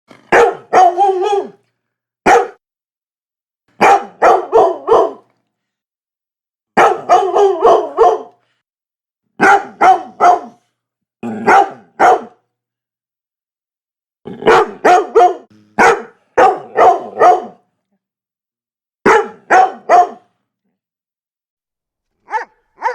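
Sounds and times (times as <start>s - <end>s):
dog barking: 0.3s - 1.6s, 2.2s - 2.6s, 3.8s - 5.3s, 6.8s - 8.4s, 9.4s - 10.7s, 11.4s - 12.4s, 14.4s - 17.6s, 19.0s - 20.3s, 22.2s - 22.9s.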